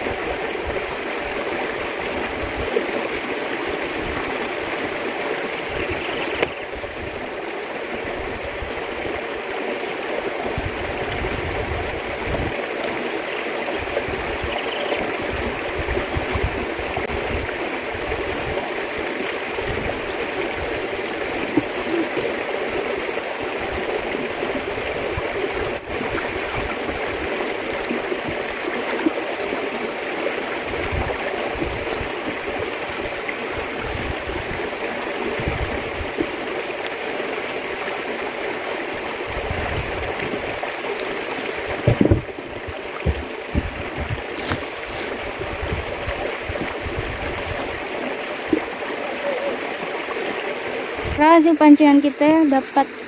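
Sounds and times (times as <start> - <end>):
running water: 0.0 - 53.0
wind buffeting microphone: 10.4 - 12.6, 13.8 - 18.7, 19.5 - 22.9, 30.7 - 36.3, 39.3 - 40.6, 41.5 - 47.8, 51.0 - 51.2.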